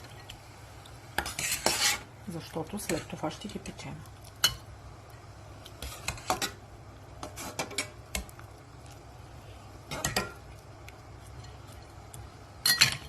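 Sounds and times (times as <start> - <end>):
metal utensils clattering on pot: 9.9 - 10.4, 12.6 - 13.0.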